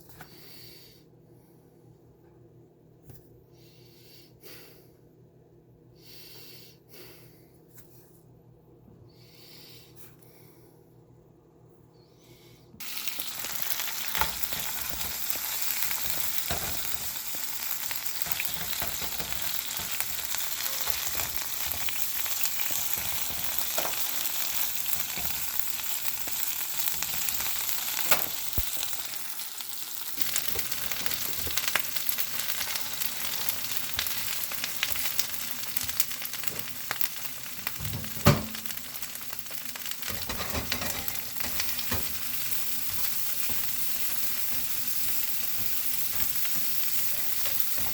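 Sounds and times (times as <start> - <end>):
food sizzling in a pan: 12.8 - 47.9.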